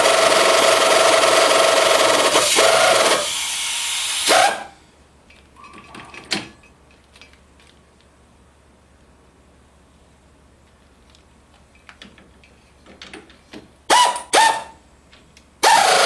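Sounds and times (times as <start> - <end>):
loud machine running: 0.0 - 4.7
small clicks and knocks: 5.3 - 8.1, 10.6 - 13.7.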